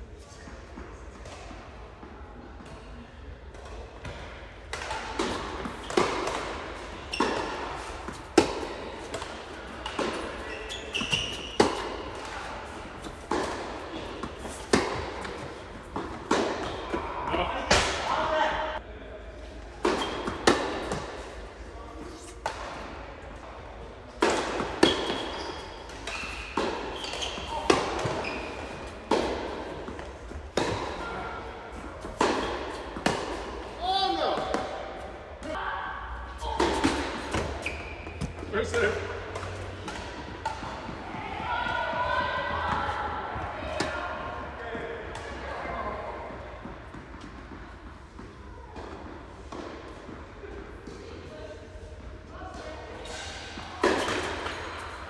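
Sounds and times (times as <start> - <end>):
racquet hitting tennis ball: 3.6 - 18.7, 19.8 - 21.5, 22.1 - 23.0, 24.1 - 35.5, 36.4 - 44.2, 53.1 - 55.0
shoe squeaks: 7.0 - 8.3, 10.1 - 13.3, 24.8 - 29.0, 37.4 - 38.6
ball bouncing on court: 7.1 - 18.1.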